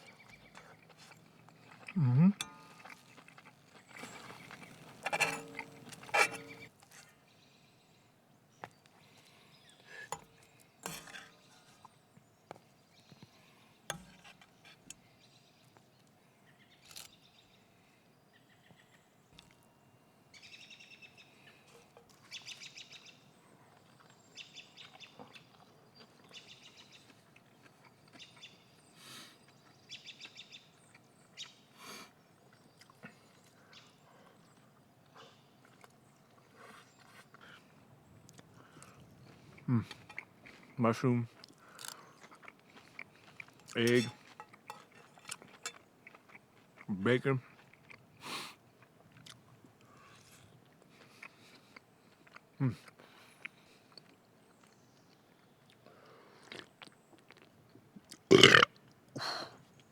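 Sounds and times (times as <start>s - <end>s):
small birds chirping: 0.0s - 19.7s, 20.3s - 45.8s
scattered knocks and clinks: 4.1s - 6.7s.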